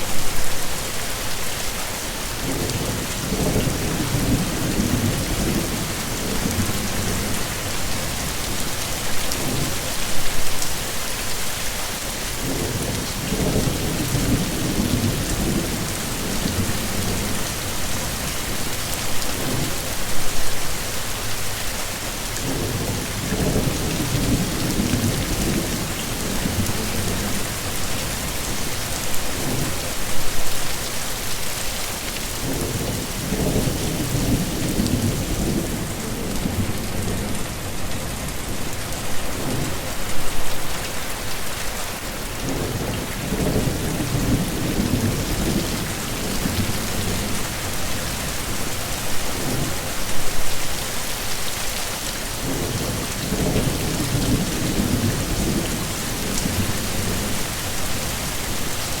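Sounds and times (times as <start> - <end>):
heavy rain pouring: 0.0 - 59.0
low rolling thunder: 32.4 - 37.9, 42.4 - 47.4, 52.4 - 57.4.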